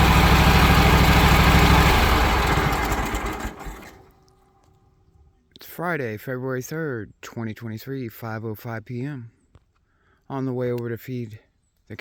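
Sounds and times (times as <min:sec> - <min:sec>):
engine running: 0:00.0 - 0:04.1.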